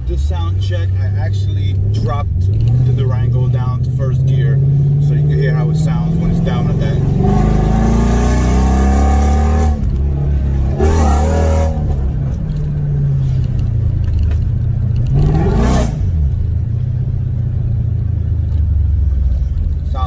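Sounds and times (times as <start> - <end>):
deep engine exhaust drone: 0.0 - 20.0.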